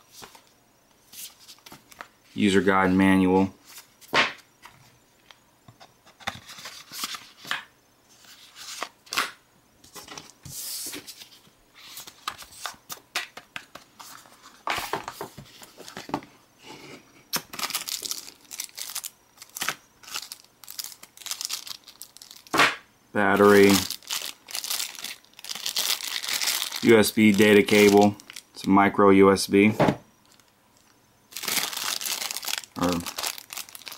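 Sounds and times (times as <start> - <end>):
plastic packaging crinkling and tearing: 17.4 - 22.5, 23.3 - 28.7, 31.3 - 33.9.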